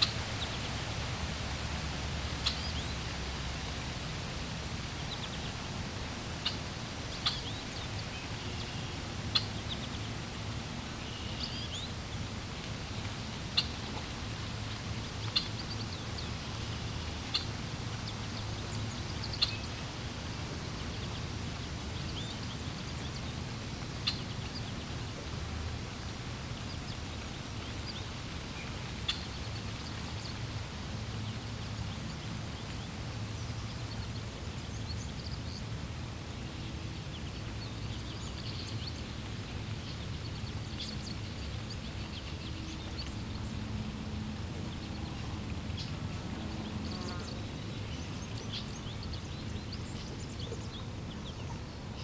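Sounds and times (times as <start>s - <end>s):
flowing water: 0.0s - 52.0s
birds chirping: 4.5s - 12.2s.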